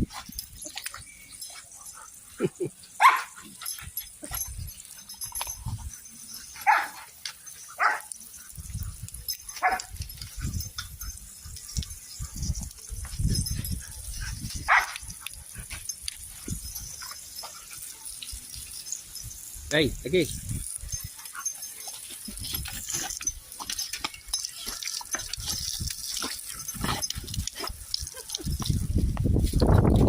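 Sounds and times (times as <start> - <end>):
dog barking: 3.0 - 3.4, 6.6 - 7.0, 7.8 - 8.1, 9.6 - 9.9, 14.7 - 15.0.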